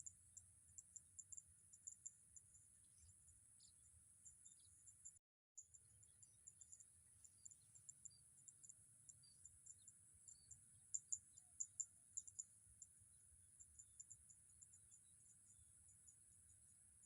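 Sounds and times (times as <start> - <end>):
insects chirping: 0.0 - 17.0.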